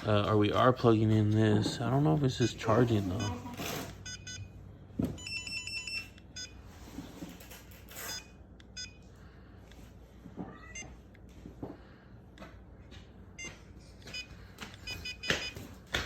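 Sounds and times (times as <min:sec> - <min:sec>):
battery charger beeping: 0:03.2 - 0:04.5, 0:05.2 - 0:06.6, 0:08.0 - 0:09.0, 0:13.4 - 0:15.6.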